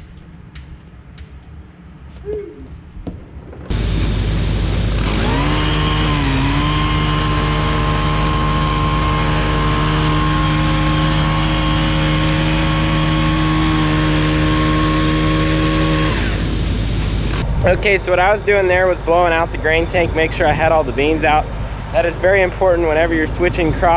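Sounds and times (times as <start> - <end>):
motor humming: 3.0 - 17.5
rush of air blowing: 3.6 - 18.9.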